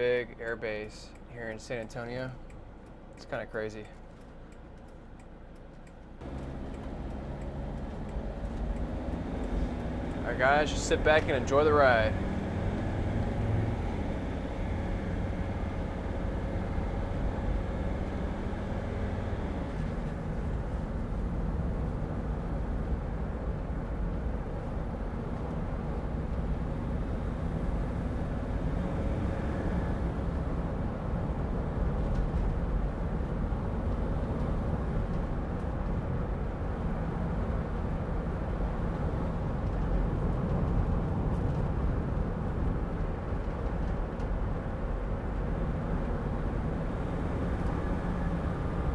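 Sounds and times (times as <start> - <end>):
van road and engine noise: 0.0 - 48.9.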